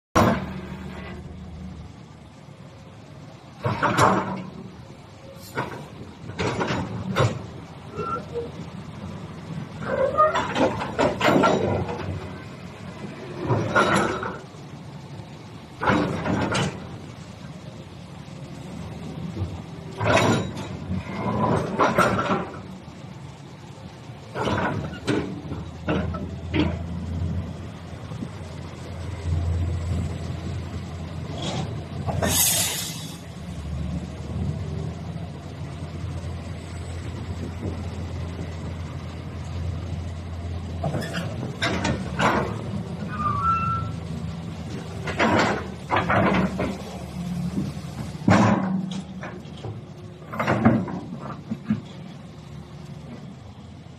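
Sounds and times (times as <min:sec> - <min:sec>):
metallic knocks and clanks: 0:05.6 - 0:07.6, 0:09.8 - 0:12.4, 0:19.9 - 0:22.7, 0:44.7 - 0:47.0, 0:47.6 - 0:52.0
brief hiss: 0:32.2 - 0:33.3.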